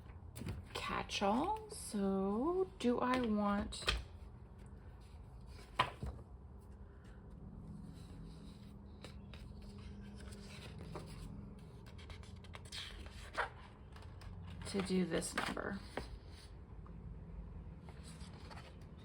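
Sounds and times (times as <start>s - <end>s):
paper rustling: 8.0s - 16.5s, 17.9s - 19.0s.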